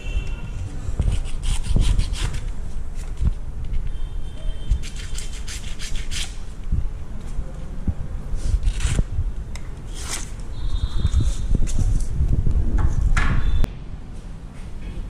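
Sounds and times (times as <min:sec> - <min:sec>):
rubbing and scraping: 0:00.5 - 0:04.0, 0:04.7 - 0:06.6.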